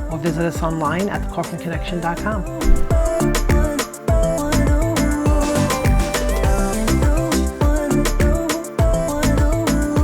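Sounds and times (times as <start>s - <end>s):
deep bass drum hits: 2.5s - 4.2s.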